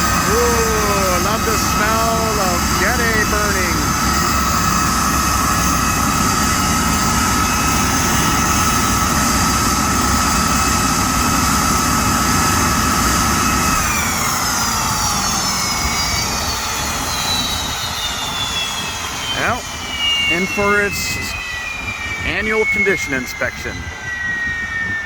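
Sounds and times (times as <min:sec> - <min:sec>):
rushing noise: 0:00.0 - 0:08.5
turbine engine whining: 0:00.0 - 0:25.0.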